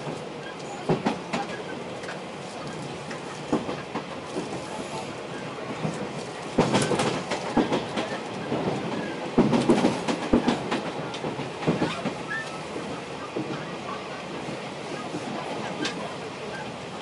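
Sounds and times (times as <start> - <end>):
train running gear clattering: 0.0 - 5.0, 5.6 - 13.7
train rumble: 0.0 - 17.0.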